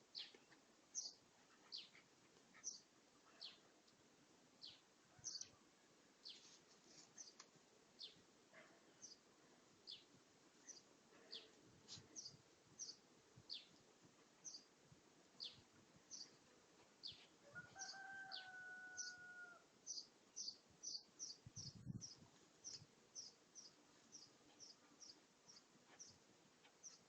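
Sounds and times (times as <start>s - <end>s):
faint birdsong chirps: 0.0s - 27.0s.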